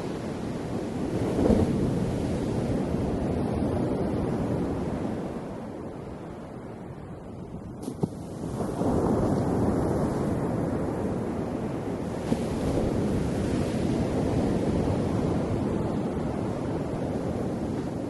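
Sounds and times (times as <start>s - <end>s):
ocean waves washing ashore: 0.0s - 18.0s.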